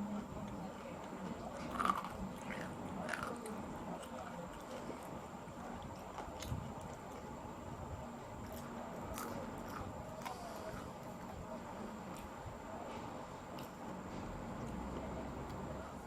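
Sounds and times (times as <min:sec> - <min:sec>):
person chewing food: 0:08.4 - 0:11.4.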